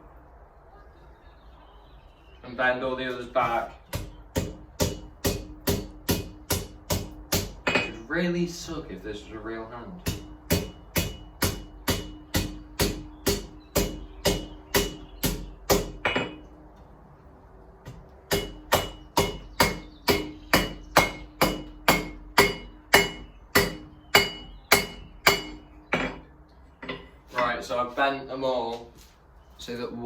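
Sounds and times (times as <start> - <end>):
hammer striking steel on anvil: 3.9 - 8.1, 10.0 - 16.5, 17.9 - 27.6.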